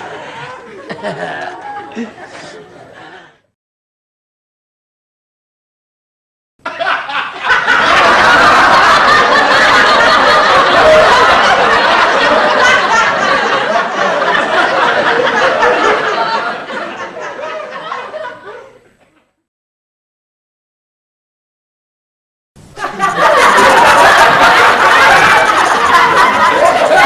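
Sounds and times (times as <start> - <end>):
studio audience laughing: 0.0 - 3.4, 6.6 - 19.1, 22.8 - 27.0.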